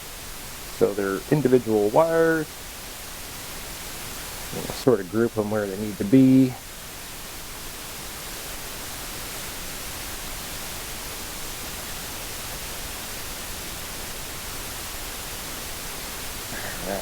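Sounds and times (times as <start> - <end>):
steady background hiss: 0.0 - 17.0.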